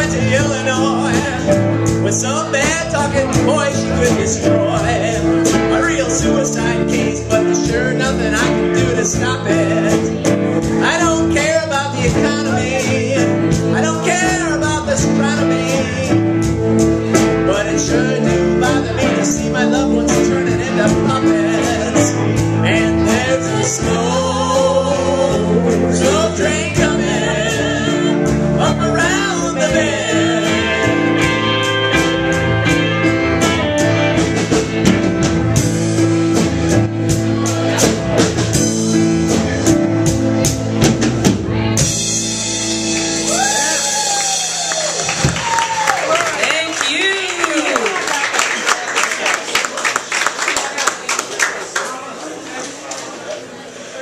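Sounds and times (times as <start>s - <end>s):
country-rock band with singing: 0.0s - 48.0s.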